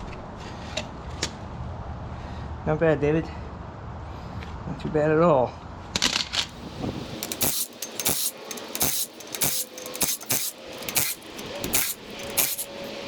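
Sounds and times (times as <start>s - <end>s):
metal tools clinking: 7.1s - 13.0s.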